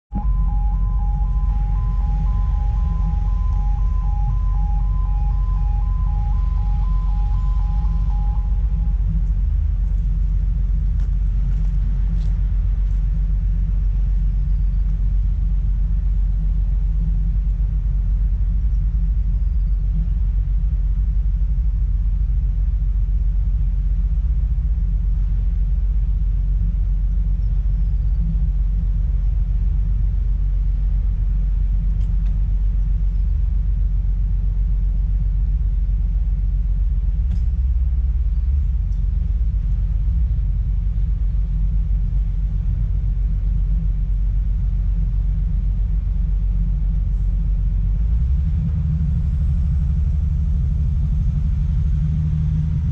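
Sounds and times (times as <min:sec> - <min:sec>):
excavator diesel engine rumbling: 0:00.0 - 0:31.8.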